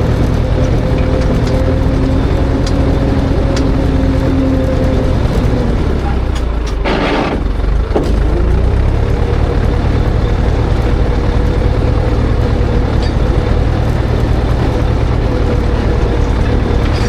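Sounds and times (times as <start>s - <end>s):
tractor diesel engine running: 0.0s - 17.0s
thin steady whine: 9.2s - 17.0s.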